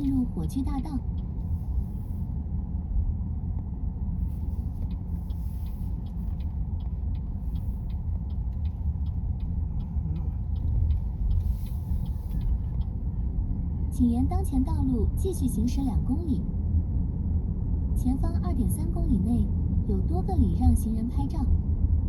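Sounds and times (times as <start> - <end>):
turn signal ticking: 0.0 - 2.2, 3.6 - 16.4
car road and engine rumble: 0.0 - 22.0.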